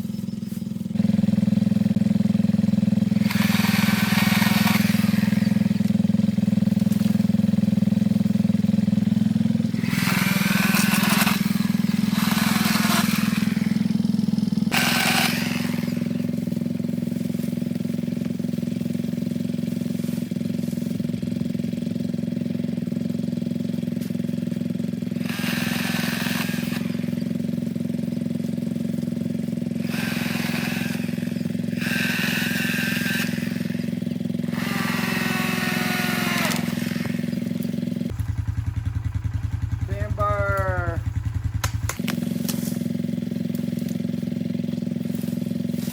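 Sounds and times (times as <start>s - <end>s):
battery chainsaw cutting wood: 1.1s - 21.5s, 23.9s - 27.8s, 29.6s - 38.2s, 44.9s - 45.9s.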